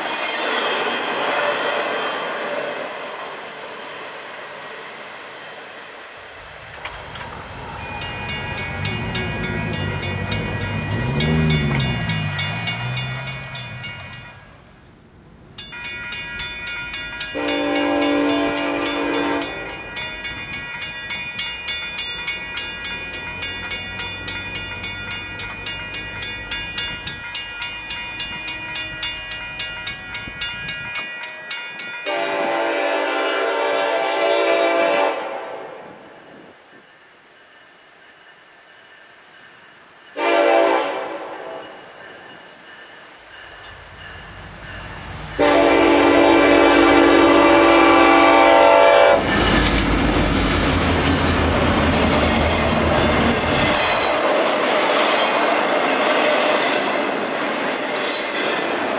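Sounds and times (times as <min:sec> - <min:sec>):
diesel locomotive engine: 0:00.0 - 0:58.9
wheels clicking over rail joints: 0:06.4 - 0:32.2, 0:49.1 - 0:57.1
locomotive horn blasts: 0:08.5 - 0:13.2, 0:17.3 - 0:19.8, 0:32.1 - 0:35.8, 0:40.2 - 0:41.8, 0:45.4 - 0:49.3.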